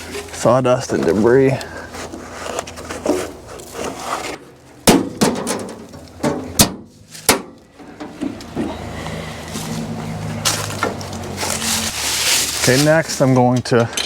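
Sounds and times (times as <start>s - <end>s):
sawdust scraping and rustling: 0.0s - 4.7s, 8.4s - 13.9s
sharp knocks: 4.8s - 8.7s.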